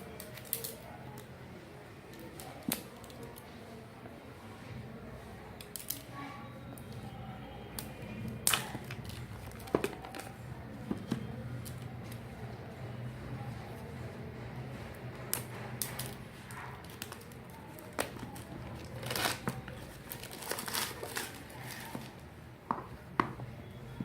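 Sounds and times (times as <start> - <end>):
plastic packaging crinkling: 0.1 - 0.8, 8.4 - 10.4, 15.8 - 22.2.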